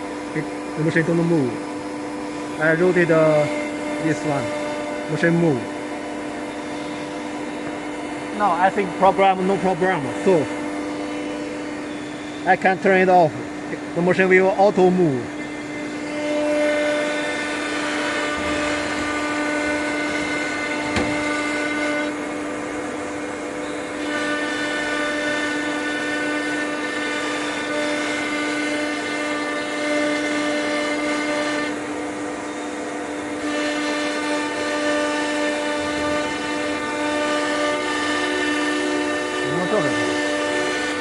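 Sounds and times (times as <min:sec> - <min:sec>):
router spindle whine: 0:00.0 - 0:41.0.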